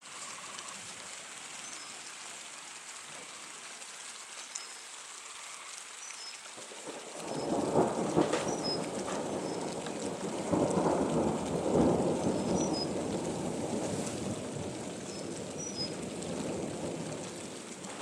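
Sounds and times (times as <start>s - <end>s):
rain falling on a pond: 0.0s - 18.0s
thunder rolling: 7.2s - 18.0s.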